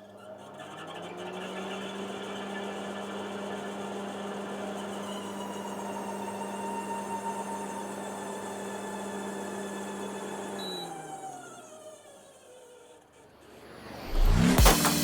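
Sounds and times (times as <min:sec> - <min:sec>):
fan motor hum and whine: 0:00.0 - 0:11.8.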